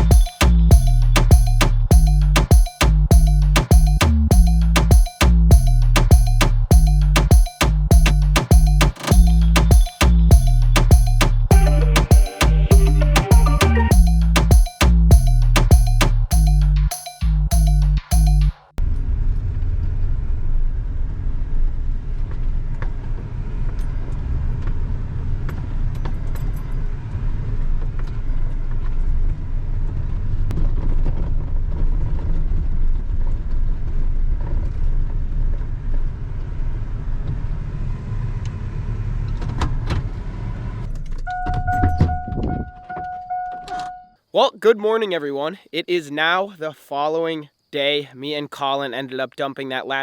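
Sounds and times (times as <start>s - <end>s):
electronic beep tone: 0.0s - 18.5s, 41.3s - 44.2s
vehicle engine rumbling: 0.0s - 18.6s.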